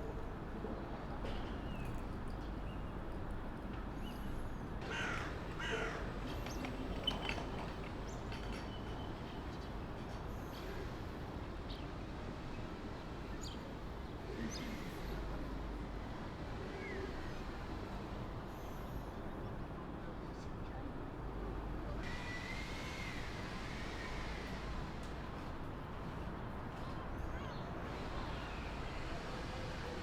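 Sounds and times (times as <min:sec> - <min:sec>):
outdoor background hum: 0:00.0 - 0:30.0
crow cawing: 0:04.9 - 0:06.0.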